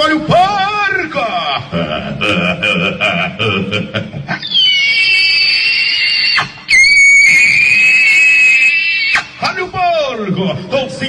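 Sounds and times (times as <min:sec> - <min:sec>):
high-pitched squeals: 0:04.4 - 0:09.5.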